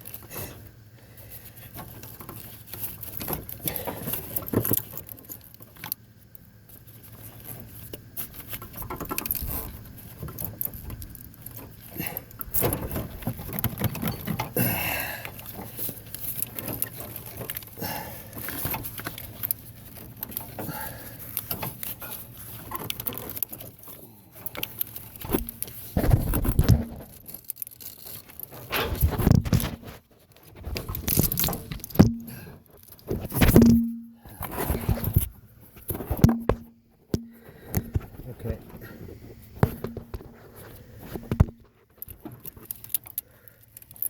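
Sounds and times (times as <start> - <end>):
plastic and metal fitting rattling: 30.7 - 32.4, 36.0 - 38.1.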